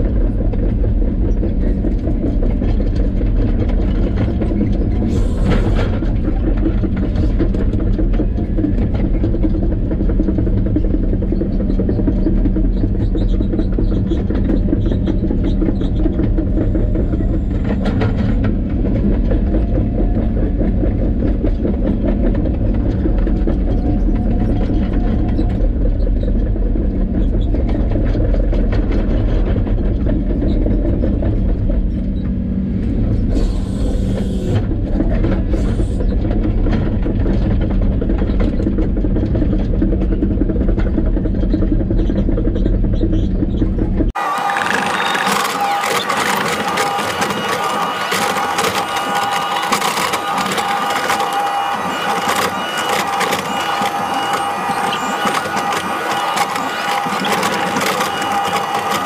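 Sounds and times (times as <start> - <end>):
vehicle engine rumble: 0.0 - 44.4.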